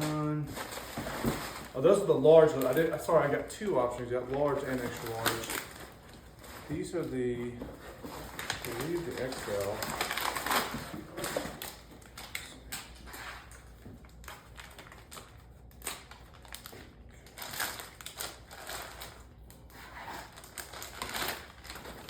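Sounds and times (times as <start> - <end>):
packaging rustling and crinkling: 0.0 - 22.0.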